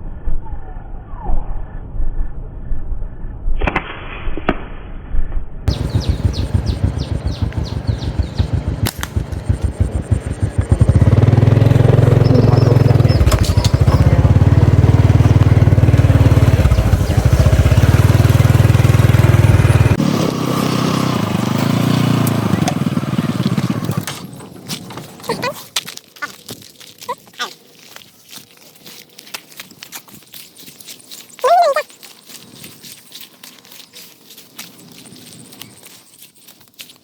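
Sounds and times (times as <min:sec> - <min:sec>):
small motorcycle engine running: 0:05.7 - 0:25.5.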